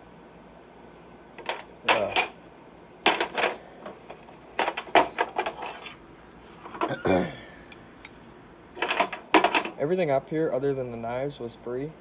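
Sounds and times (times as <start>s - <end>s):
metal hand tools clattering: 1.4s - 2.4s, 8.8s - 9.9s.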